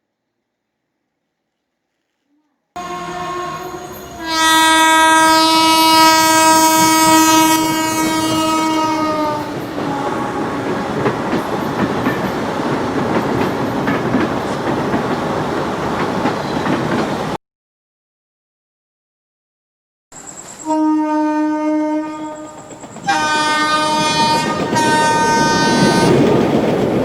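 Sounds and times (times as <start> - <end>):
locomotive horn: 2.8 - 12.8, 20.6 - 26.4
train wheels clattering on rails: 3.8 - 17.4, 21.9 - 27.0.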